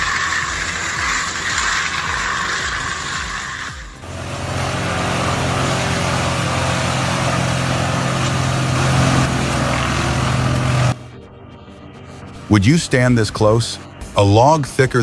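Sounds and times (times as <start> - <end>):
machine engine droning: 0.0 - 14.7.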